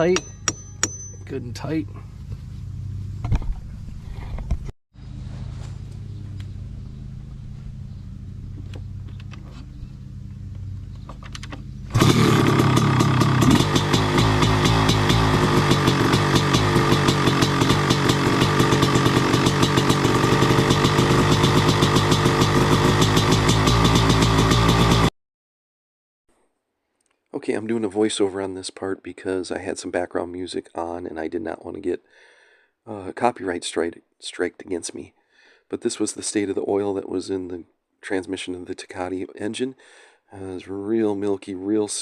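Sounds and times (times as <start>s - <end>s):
two-stroke engine running: 5.0s - 25.1s.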